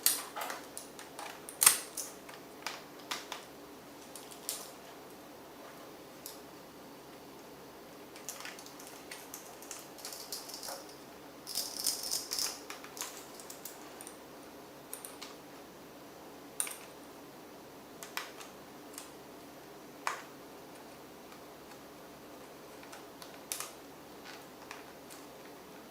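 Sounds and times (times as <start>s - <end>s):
laptop parts clicking and rattling: 0.0s - 3.4s, 8.2s - 14.2s.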